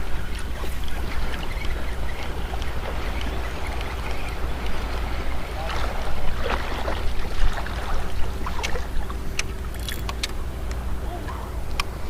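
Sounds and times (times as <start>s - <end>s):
wind rumbling on microphone: 0.0s - 12.0s
breaking surf: 1.0s - 9.0s.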